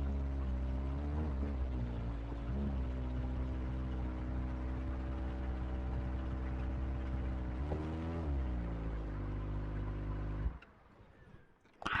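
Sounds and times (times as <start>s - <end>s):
motorcycle engine idling: 0.0s - 7.6s.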